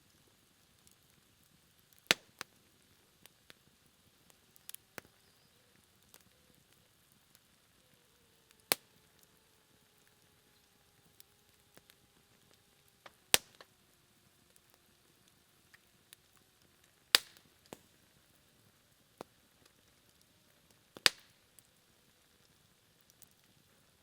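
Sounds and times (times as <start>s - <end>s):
campfire embers crackling: 0.0s - 24.0s
loud sharp fire pops: 1.9s - 2.6s, 13.0s - 13.7s, 17.1s - 17.9s, 21.0s - 21.4s
faint thin whistle: 4.7s - 6.6s.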